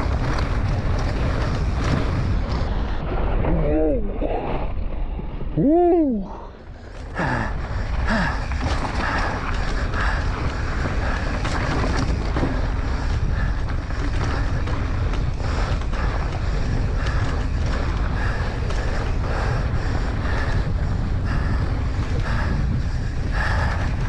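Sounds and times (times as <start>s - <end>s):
bike rattling and knocking: 0.0s - 3.0s, 7.1s - 24.0s
wind buffeting microphone: 0.0s - 24.0s
heavy breathing: 6.1s - 12.1s, 12.8s - 24.0s.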